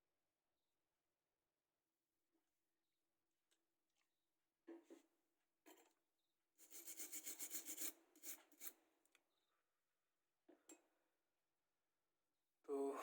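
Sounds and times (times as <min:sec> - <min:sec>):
hand tool scraping circuit board: 0:06.6 - 0:08.8.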